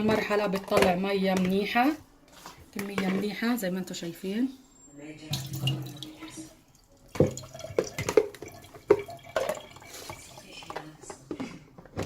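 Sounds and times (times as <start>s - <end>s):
water dripping and splashing: 5.4s - 10.8s.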